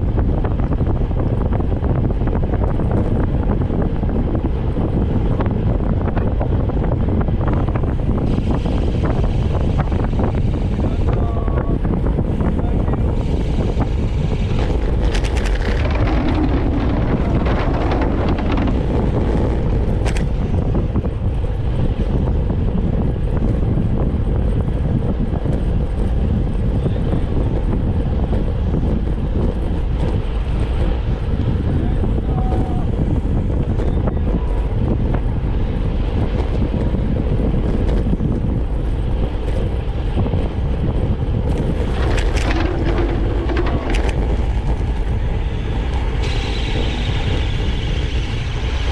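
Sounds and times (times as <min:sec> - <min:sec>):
road travel rumble: 0:00.0 - 0:48.9
wind buffeting microphone: 0:00.0 - 0:48.9.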